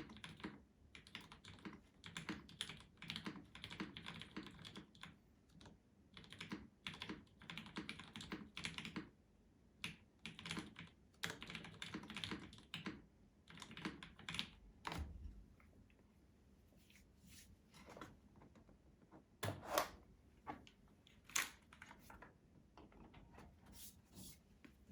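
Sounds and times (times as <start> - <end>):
mechanical keyboard typing: 0.0 - 9.2, 9.8 - 15.0.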